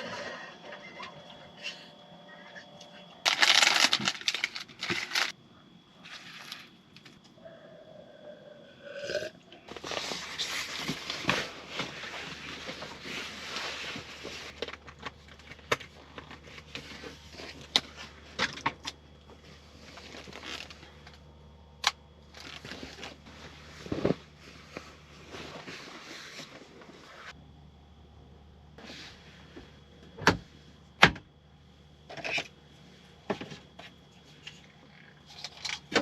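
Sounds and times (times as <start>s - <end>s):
faint low hum: 0.0s - 36.0s
rustling handling noises: 2.4s - 5.4s, 9.7s - 21.2s, 22.2s - 27.3s.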